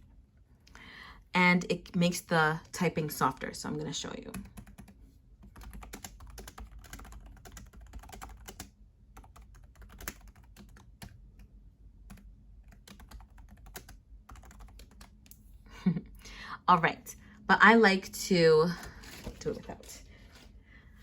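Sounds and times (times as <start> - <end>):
soft keyboard typing: 4.3 - 15.4.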